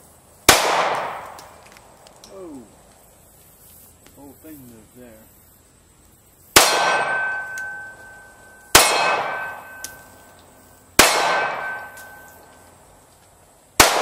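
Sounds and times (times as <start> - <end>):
pistol shots: 0.5 - 1.5, 6.6 - 10.0, 11.0 - 12.3, 13.8 - 14.0
ringing clang of steel target: 6.6 - 10.1, 11.0 - 12.5.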